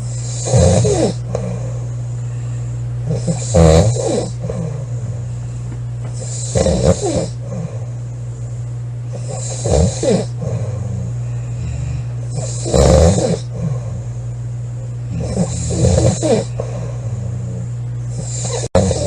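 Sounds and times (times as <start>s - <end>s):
steady low hum: 0.0s - 19.0s
woman snoring loudly: 0.2s - 1.8s, 3.1s - 5.1s, 6.2s - 7.9s, 9.2s - 14.1s, 15.1s - 19.0s.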